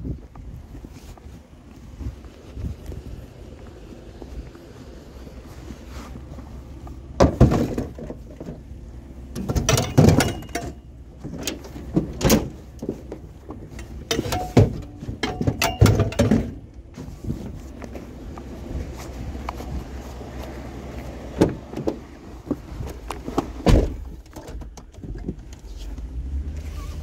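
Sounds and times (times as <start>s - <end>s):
metal scrap clanking and banging: 9.3s - 13.0s, 13.7s - 16.7s.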